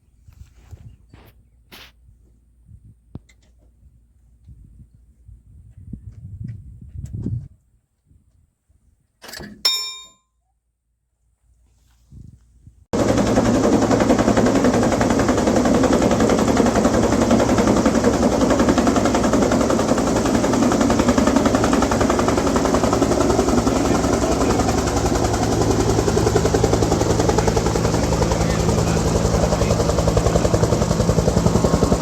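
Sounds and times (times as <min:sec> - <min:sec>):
engine with mechanical chatter: 0:13.0 - 0:32.0.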